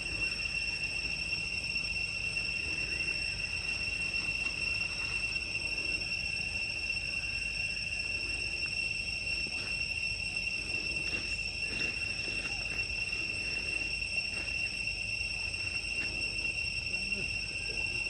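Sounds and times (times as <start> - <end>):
insects droning: 0.0 - 18.0.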